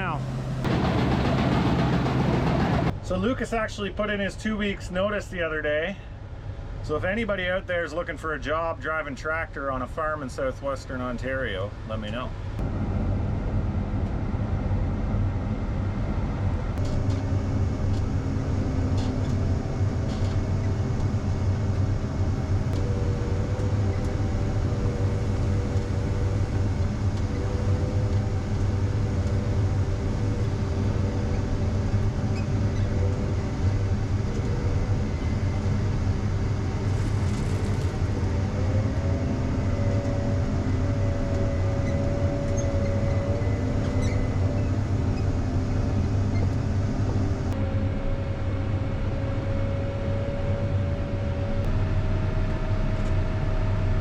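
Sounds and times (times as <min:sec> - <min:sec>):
tractor engine running: 0:00.0 - 0:02.9, 0:12.4 - 0:49.2
mechanical whine: 0:00.0 - 0:03.2, 0:11.4 - 0:54.0.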